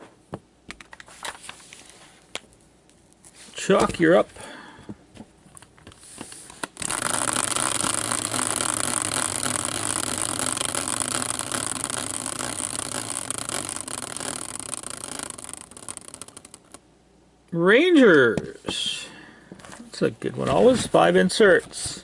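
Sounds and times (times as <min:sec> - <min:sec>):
prize wheel clicking: 0:06.8 - 0:16.8.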